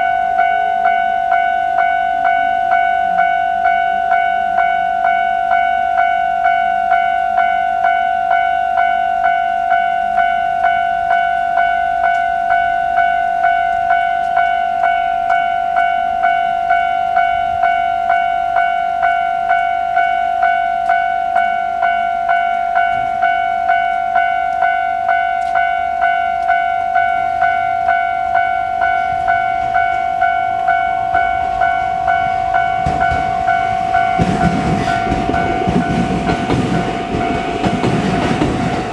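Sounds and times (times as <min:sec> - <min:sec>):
level crossing warning bell: 0:00.0 - 0:38.9
train rumble: 0:26.4 - 0:38.9.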